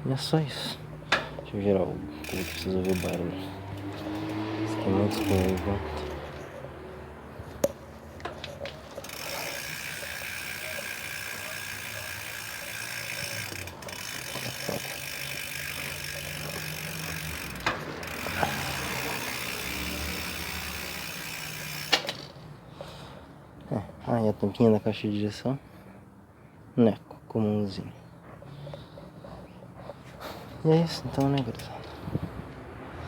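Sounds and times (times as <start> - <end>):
bicycle hub ratchet buzz: 2.1 - 6.4, 8.8 - 22.4.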